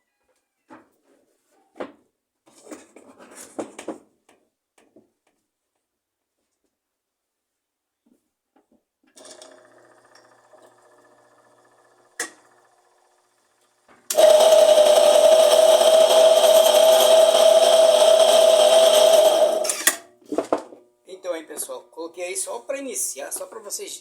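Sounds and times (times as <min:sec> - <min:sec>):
washing machine motor scraping: 0:09.2 - 0:20.0
motor hum: 0:09.2 - 0:20.2.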